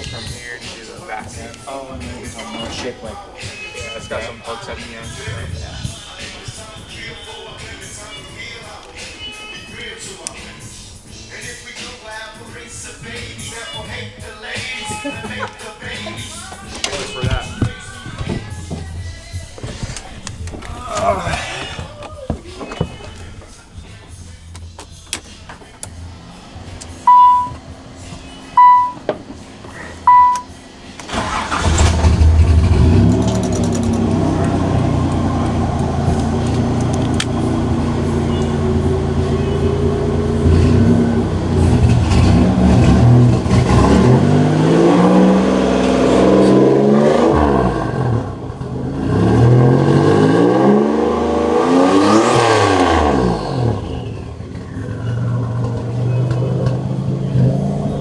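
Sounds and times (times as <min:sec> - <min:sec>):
car engine starting and idling: 0:00.0 - 0:58.0
car engine revving: 0:03.8 - 0:09.0, 0:15.9 - 0:22.0, 0:24.1 - 0:58.0
short beeps: 0:27.1 - 0:27.6, 0:28.6 - 0:29.0, 0:30.1 - 0:30.5.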